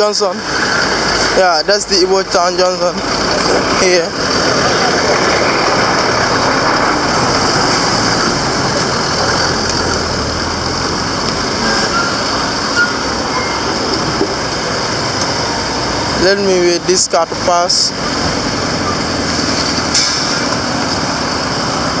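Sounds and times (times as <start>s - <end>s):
vehicles passing: 0.0s - 22.0s
brief high tones: 11.6s - 13.8s.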